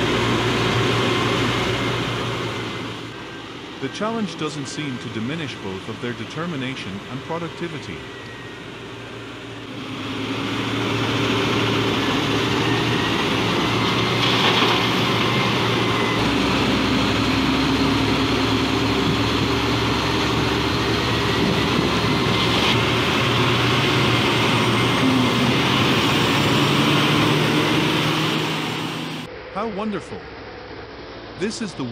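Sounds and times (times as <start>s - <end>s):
diesel engine running: 0.0s - 31.9s.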